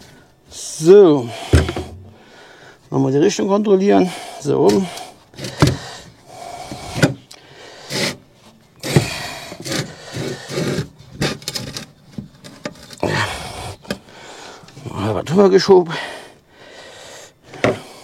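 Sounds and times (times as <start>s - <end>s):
rubber tyre scraping wheel rim: 7.8s - 8.2s, 8.8s - 13.3s.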